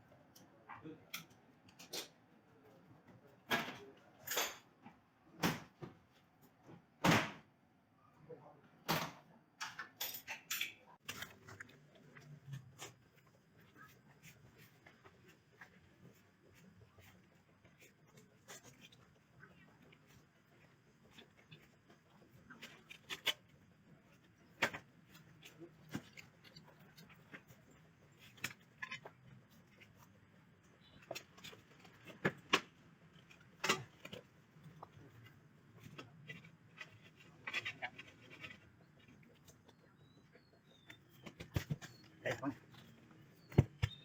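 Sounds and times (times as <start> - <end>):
tools clicking and knocking: 8.9 - 11.3.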